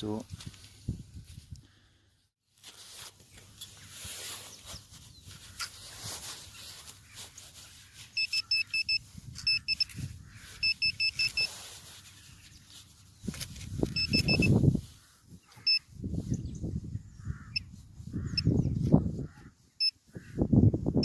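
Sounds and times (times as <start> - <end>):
rustling of long grass: 0.0 - 1.6, 2.4 - 21.0
metal detector short high beeps: 8.2 - 10.0, 10.6 - 11.6, 13.8 - 14.6, 15.6 - 15.8.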